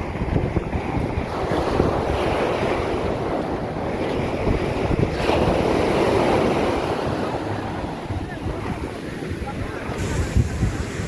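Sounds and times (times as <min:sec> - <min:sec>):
ocean surf on beach: 0:00.0 - 0:11.0
wind buffeting microphone: 0:00.0 - 0:11.0.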